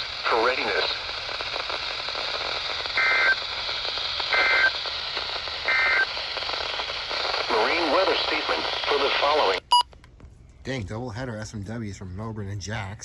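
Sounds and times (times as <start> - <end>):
radio static hiss: 0.0 - 9.8.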